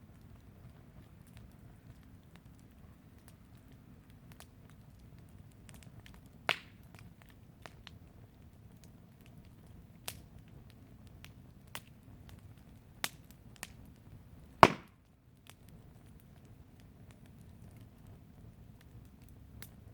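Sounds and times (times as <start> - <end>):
wood fire crackling: 0.0 - 19.9
loud fire pops: 14.6 - 15.0.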